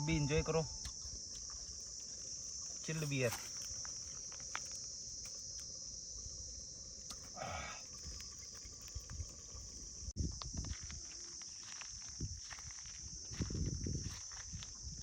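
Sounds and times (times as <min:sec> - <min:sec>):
high-pitched insect chirring: 0:00.0 - 0:10.1.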